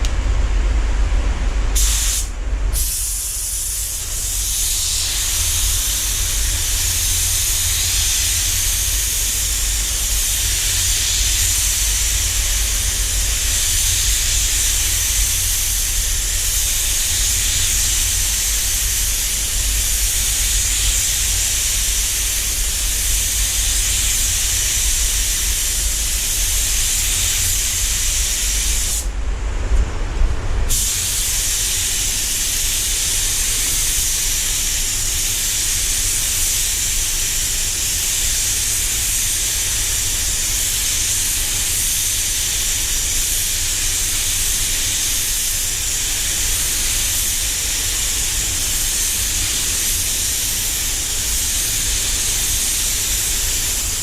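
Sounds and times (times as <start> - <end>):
spray gun air hiss: 1.7 - 29.2, 30.7 - 54.0
low rumble: 29.1 - 30.8.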